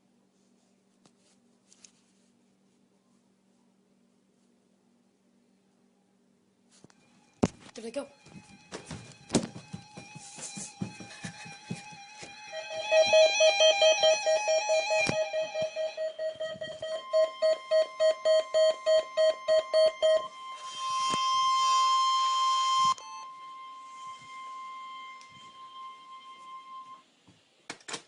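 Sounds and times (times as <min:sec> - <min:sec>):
steady warning alarm tone: 0:12.5 - 0:27.0
rapid alarm beeps: 0:15.3 - 0:20.4.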